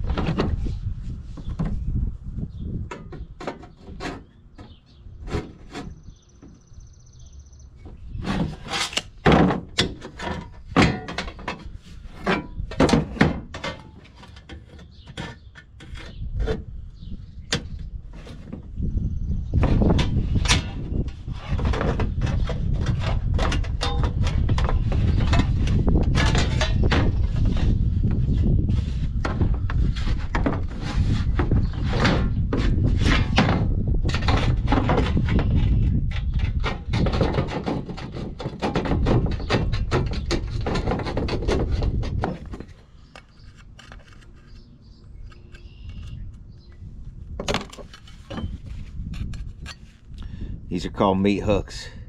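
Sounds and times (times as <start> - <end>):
hand tool knocks and scrapes: 19.5 - 46.7, 47.4 - 50.0.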